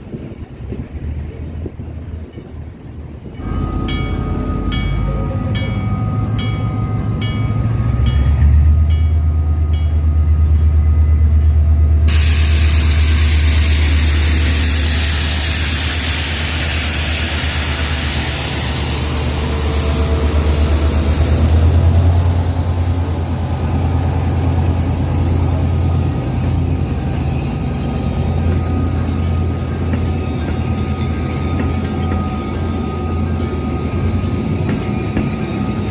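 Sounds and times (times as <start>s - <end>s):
locomotive diesel engine hum: 0.0s - 35.9s
loud steady hiss: 12.1s - 19.9s.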